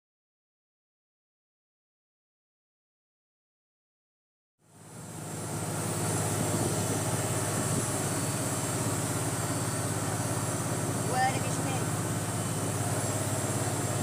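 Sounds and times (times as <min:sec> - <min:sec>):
boat engine humming: 0:04.6 - 0:14.0.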